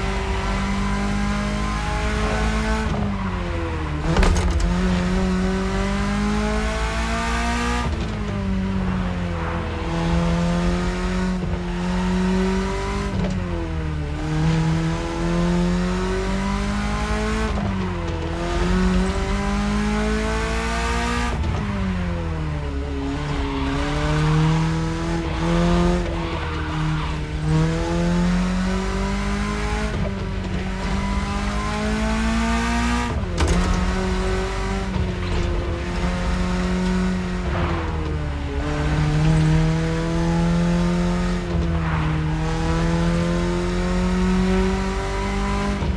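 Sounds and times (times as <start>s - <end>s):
car engine accelerating: 0.0s - 45.9s.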